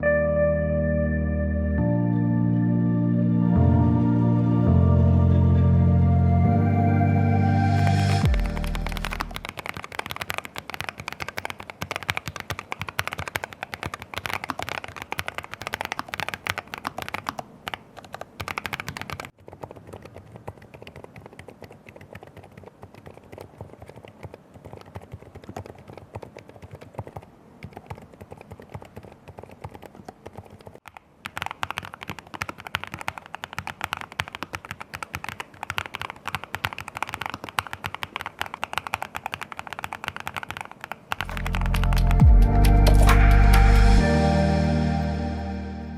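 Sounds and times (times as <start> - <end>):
fast mechanical keyboard typing: 8.2 - 43.8.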